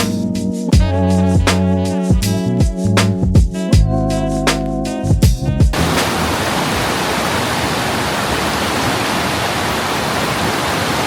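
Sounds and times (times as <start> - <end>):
river rushing: 5.8 - 11.0.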